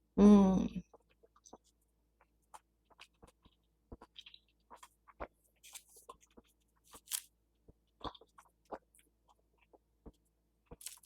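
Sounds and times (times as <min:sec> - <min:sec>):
person chewing juicy fruit: 0:00.8 - 0:11.0.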